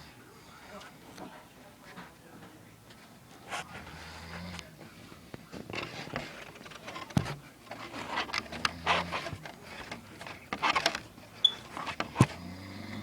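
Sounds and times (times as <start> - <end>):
man snoring: 12.4 - 13.0.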